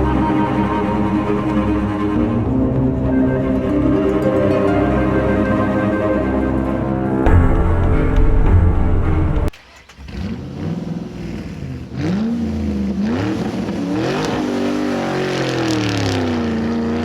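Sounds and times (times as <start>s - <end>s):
car engine revving: 7.0s - 17.0s.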